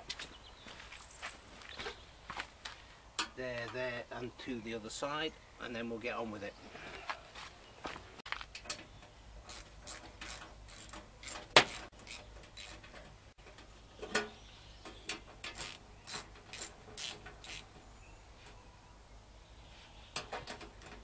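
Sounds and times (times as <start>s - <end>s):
screws being undone: 9.5s - 13.0s, 15.4s - 17.7s.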